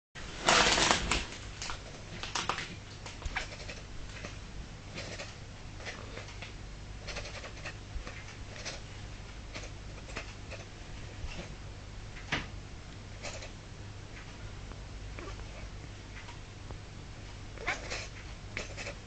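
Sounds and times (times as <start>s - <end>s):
cat chirping: 3.3s - 3.8s, 4.9s - 6.3s, 7.0s - 7.8s, 9.5s - 10.7s, 13.2s - 13.5s, 17.6s - 19.0s.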